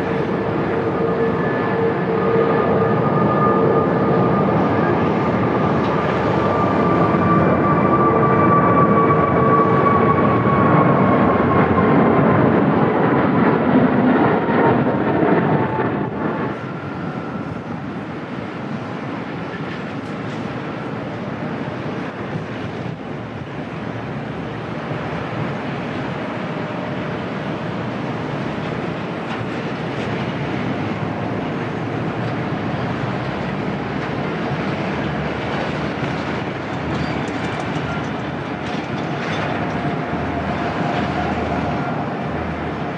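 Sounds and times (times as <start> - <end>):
wind rumbling: 0.0 - 19.2
distant jet engines: 0.0 - 42.9
jet engines whining: 0.0 - 42.9.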